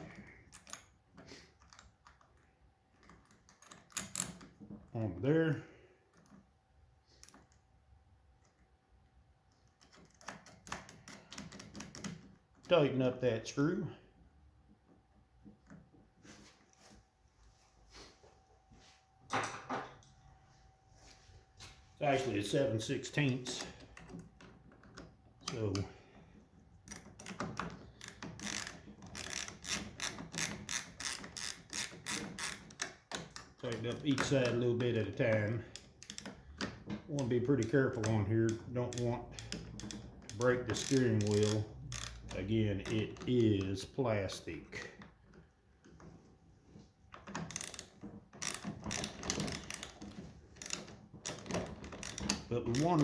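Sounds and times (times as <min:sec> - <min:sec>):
ratchet wrench clicking: 0:26.9 - 0:33.0, 0:35.7 - 0:36.3, 0:37.6 - 0:42.3, 0:47.5 - 0:53.0.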